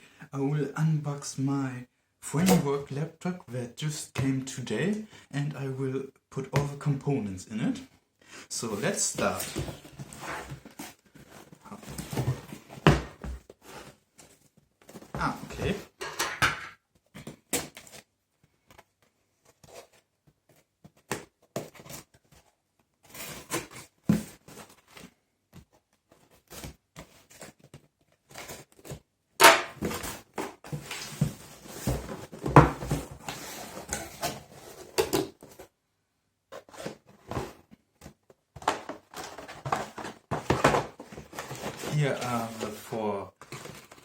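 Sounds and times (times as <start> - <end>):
packaging being unpacked: 38.6 - 44.0.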